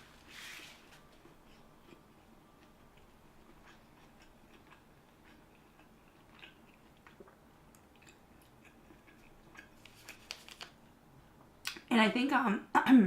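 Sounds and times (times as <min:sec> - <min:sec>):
person chewing: 0:01.2 - 0:10.7.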